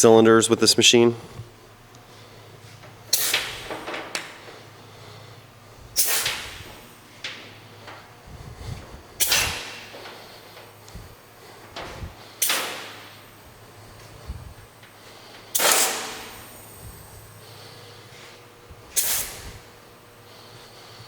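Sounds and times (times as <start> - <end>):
pneumatic clamp air bursts: 3.0 - 4.7, 5.9 - 18.3, 18.9 - 19.7.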